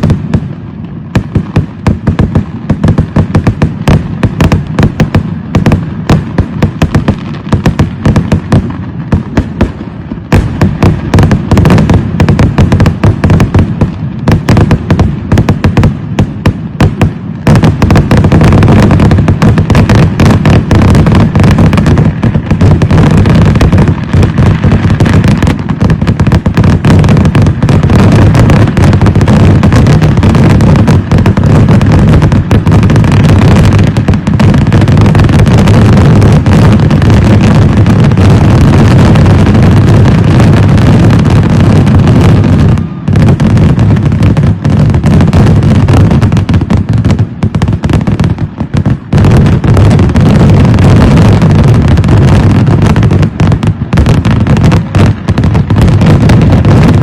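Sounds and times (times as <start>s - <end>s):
fireworks shells bursting: 1.1s - 40.0s.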